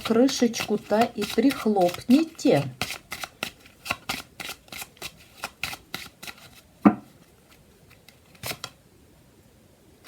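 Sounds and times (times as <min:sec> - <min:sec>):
cards shuffling and clicking: 0:00.0 - 0:06.7, 0:07.4 - 0:08.8.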